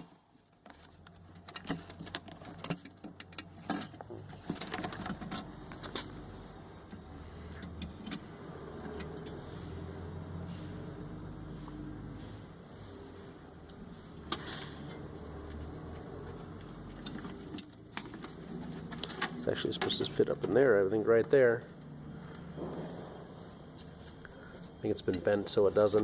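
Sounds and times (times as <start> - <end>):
plastic parts clicking and rattling: 0.0 - 6.3, 14.2 - 23.0.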